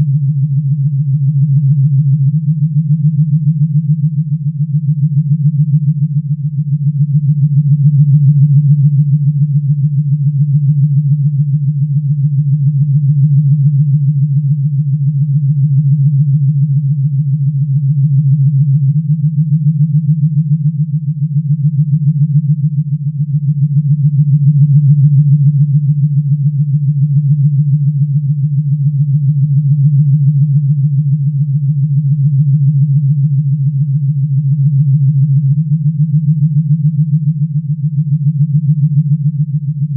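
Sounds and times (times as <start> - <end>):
low pulsing synthesized hum: 0.0 - 39.9.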